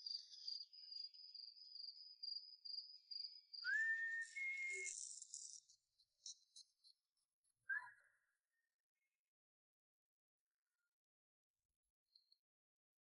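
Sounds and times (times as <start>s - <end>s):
whistling hiss: 3.6s - 5.5s.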